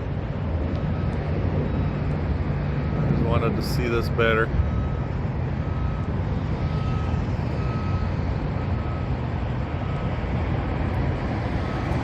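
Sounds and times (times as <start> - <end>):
diesel machinery rumbling: 0.0 - 12.0
faint backup alarm beeping: 0.7 - 2.0, 3.6 - 10.4, 11.6 - 12.0.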